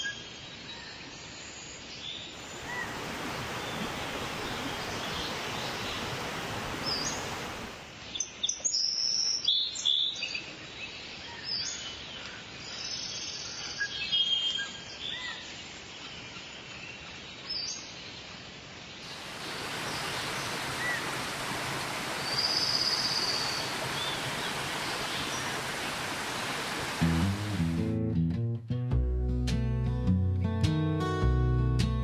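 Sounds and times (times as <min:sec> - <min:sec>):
steady background hiss: 0:02.0 - 0:08.2, 0:14.9 - 0:27.9
birds chirping and calling: 0:19.4 - 0:27.6
strummed acoustic guitar music: 0:27.0 - 0:32.0.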